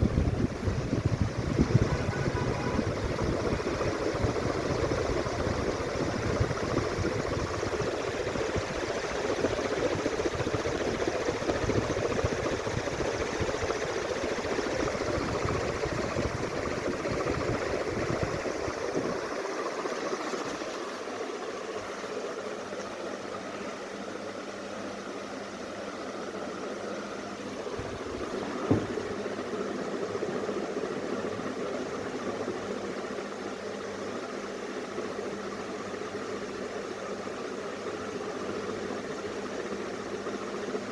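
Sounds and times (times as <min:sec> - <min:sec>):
ceiling fan air rush: 0:00.0 - 0:40.9
faint motor hum: 0:00.0 - 0:40.9.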